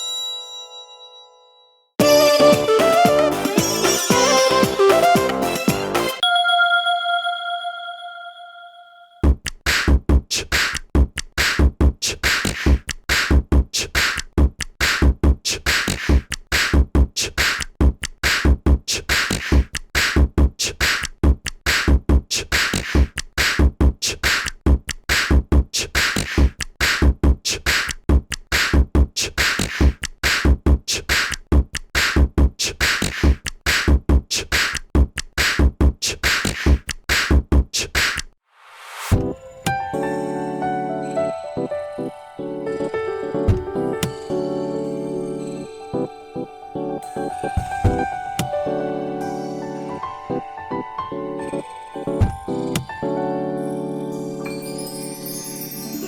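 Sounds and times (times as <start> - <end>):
electronic ringtone with drum beat: 2.0 - 8.9.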